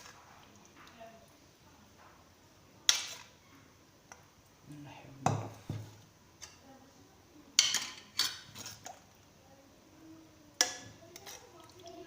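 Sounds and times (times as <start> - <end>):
spoon scraping dish: 7.6 - 9.0.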